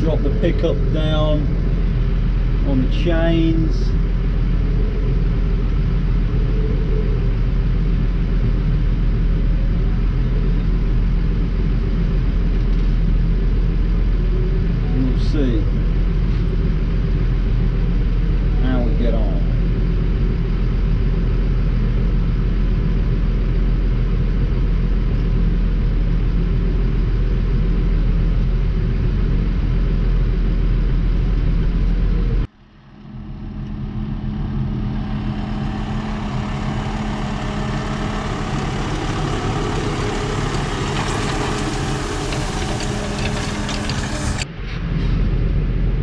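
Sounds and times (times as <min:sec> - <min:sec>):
tractor engine running: 0:00.0 - 0:18.1, 0:26.4 - 0:44.5
hiss and clatter: 0:35.6 - 0:45.1.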